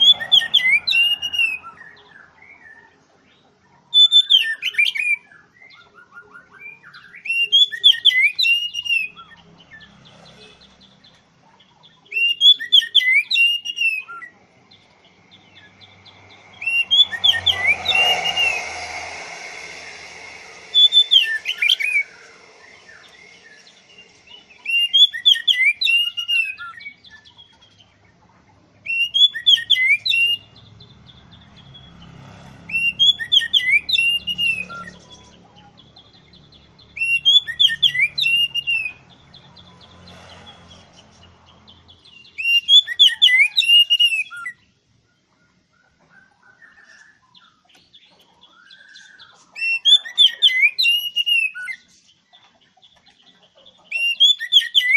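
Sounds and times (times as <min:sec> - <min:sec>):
bird singing whistled notes: 0:00.0 - 0:03.0, 0:03.9 - 0:09.9, 0:12.0 - 0:27.7, 0:28.8 - 0:32.1, 0:32.7 - 0:35.8, 0:36.4 - 0:39.2, 0:42.0 - 0:44.7, 0:46.4 - 0:51.9, 0:53.8 - 0:54.9.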